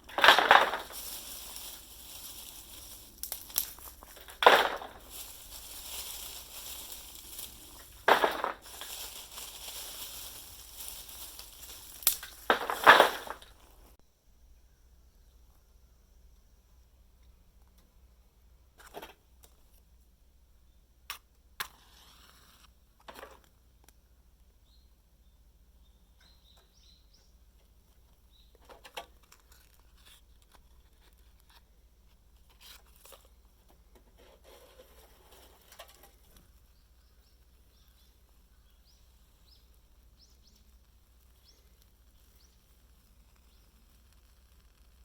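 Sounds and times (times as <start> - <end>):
short rustles: 0.0 - 14.0
faint bird chirps: 14.4 - 17.5, 24.6 - 27.6, 36.7 - 43.9.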